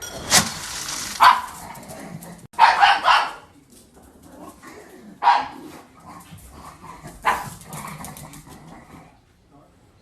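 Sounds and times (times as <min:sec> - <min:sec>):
dog barking: 0:01.2 - 0:01.6, 0:02.6 - 0:03.5, 0:05.2 - 0:05.7, 0:07.2 - 0:07.6.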